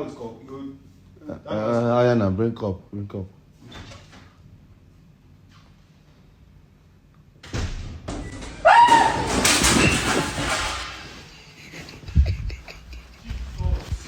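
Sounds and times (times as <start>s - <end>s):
person screaming in fright: 8.6s - 9.5s
door slamming: 8.7s - 11.0s.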